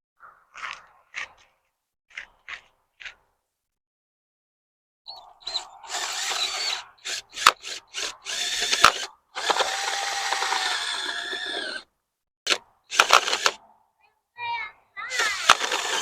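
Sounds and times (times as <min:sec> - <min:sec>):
power drill auger into ground: 0:05.5 - 0:11.9, 0:12.5 - 0:13.6, 0:15.0 - 0:16.0
sharp clicks: 0:05.9 - 0:11.9, 0:12.5 - 0:13.6, 0:15.1 - 0:16.0.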